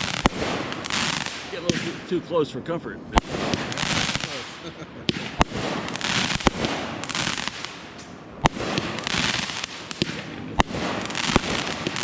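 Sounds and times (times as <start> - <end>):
firework booms: 0.0 - 2.2, 3.1 - 12.0
fireworks crackling: 0.0 - 2.5, 3.1 - 12.0
small firework pops: 3.2 - 12.0.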